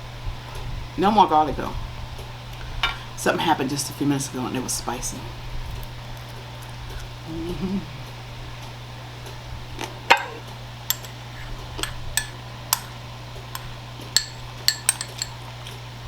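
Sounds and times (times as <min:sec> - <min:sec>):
steady low hum: 0:00.0 - 0:16.0
utensils clinking against plate: 0:10.1 - 0:13.0, 0:13.6 - 0:15.8.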